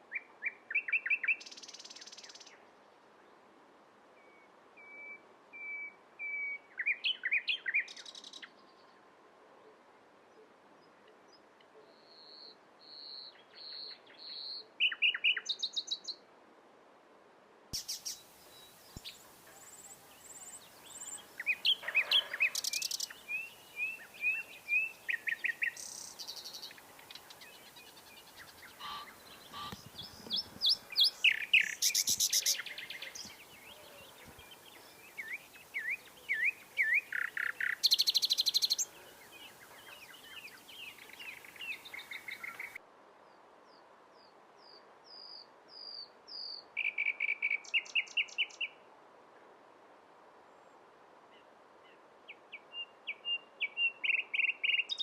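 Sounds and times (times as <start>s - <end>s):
nightingale singing trills and rattles: 0.1s - 2.6s, 12.2s - 16.1s, 17.8s - 42.8s, 52.7s - 55.0s.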